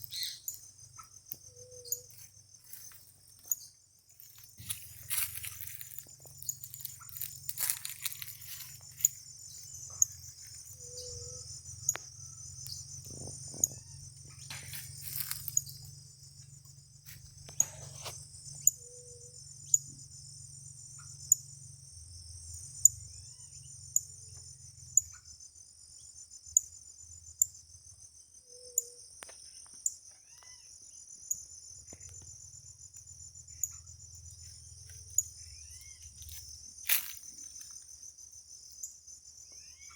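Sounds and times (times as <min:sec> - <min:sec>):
cricket chorus: 0:00.0 - 0:39.9
rustling: 0:04.2 - 0:09.2.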